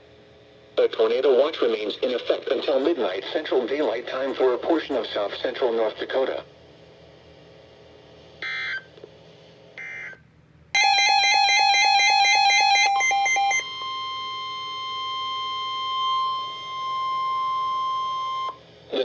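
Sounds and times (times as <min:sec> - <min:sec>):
pulsed electronic alarm beep: 0:10.8 - 0:18.6
steady high warning alarm tone: 0:10.8 - 0:18.6.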